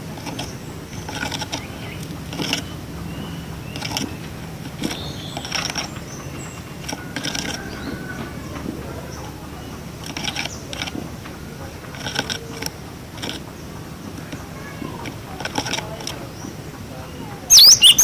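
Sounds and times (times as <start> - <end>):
bird calling sharp high calls: 17.5 - 18.0
whistled bird notes: 17.5 - 18.0.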